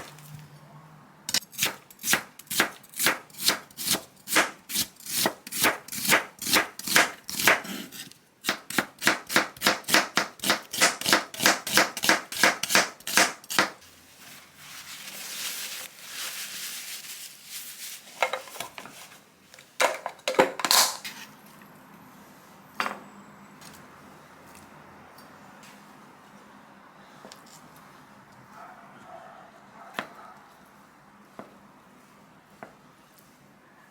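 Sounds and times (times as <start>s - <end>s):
knife chopping on cutting board: 1.6s - 13.8s.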